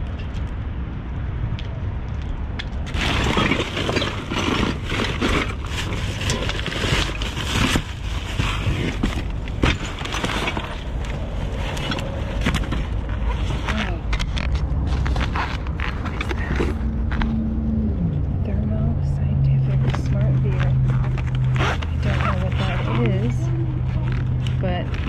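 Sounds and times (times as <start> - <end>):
rummaging through trash: 2.9 - 17.3, 19.7 - 25.0.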